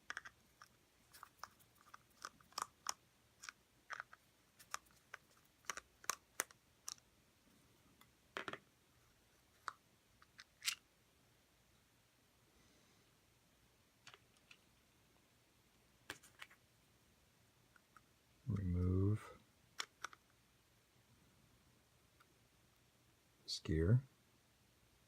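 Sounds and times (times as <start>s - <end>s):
plastic clicks and snaps: 19.8s - 20.3s.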